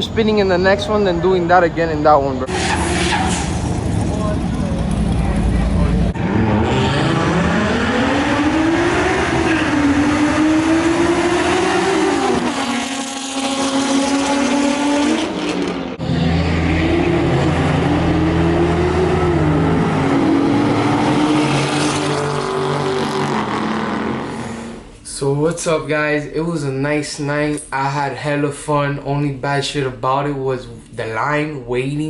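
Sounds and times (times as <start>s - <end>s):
car engine accelerating through gears: 2.5s - 24.9s.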